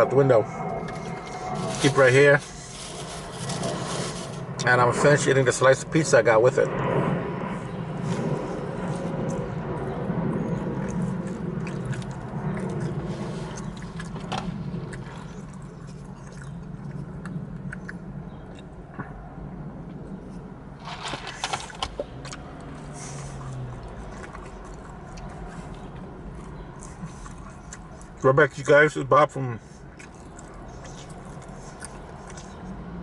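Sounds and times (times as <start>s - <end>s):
low steady rumble: 0.0s - 33.0s
handling clicks and scrapes: 20.8s - 22.4s.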